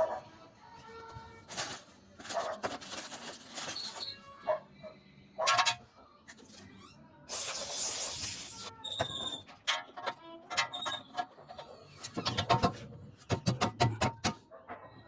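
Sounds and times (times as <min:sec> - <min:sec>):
hiss: 0:07.3 - 0:08.7.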